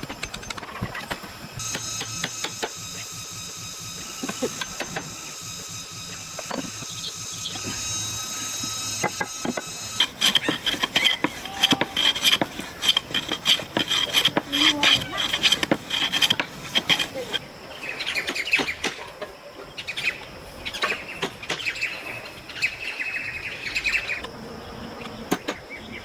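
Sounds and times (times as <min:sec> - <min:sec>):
tool scraping wood: 0:00.0 - 0:17.5
mechanical hum: 0:00.0 - 0:26.0.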